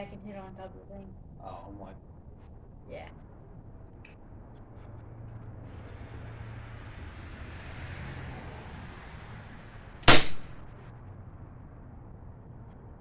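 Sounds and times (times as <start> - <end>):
air pistol shot: 10.0 - 10.6
faint steady hiss: 10.0 - 10.6
softer second crack: 10.0 - 10.6.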